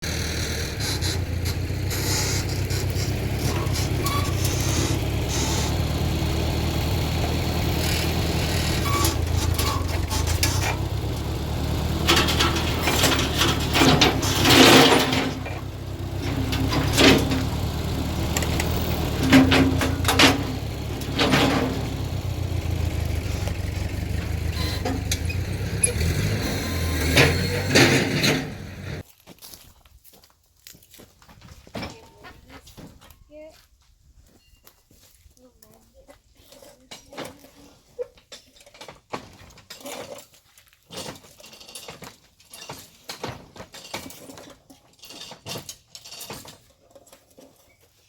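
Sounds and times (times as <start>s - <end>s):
loud noisy bursts: 0.0s - 29.0s
sawmill engine running: 0.0s - 29.0s.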